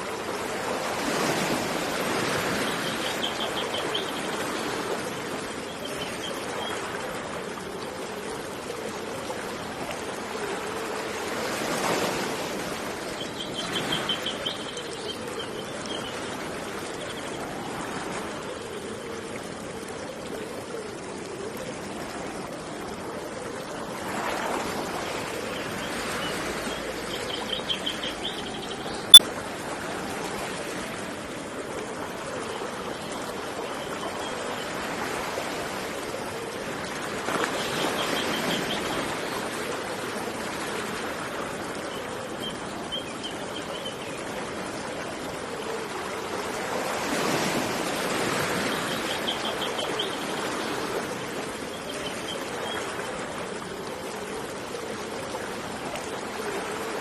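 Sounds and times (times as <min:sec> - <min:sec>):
river water running: 0:00.0 - 0:57.0
birds trilling: 0:02.5 - 0:06.8, 0:25.1 - 0:29.2.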